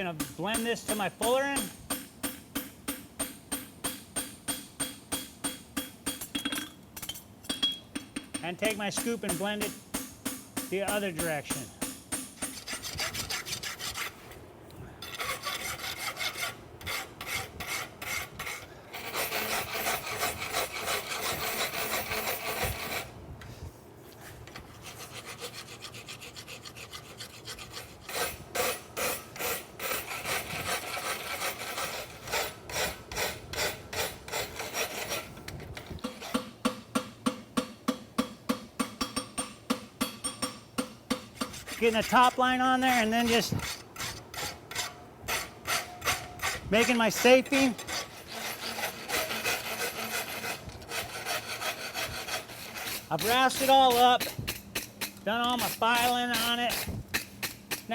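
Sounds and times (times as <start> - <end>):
file rasping on steel: 8.6 - 14.4, 15.0 - 23.1, 24.4 - 35.4, 36.0 - 36.5, 41.1 - 57.9.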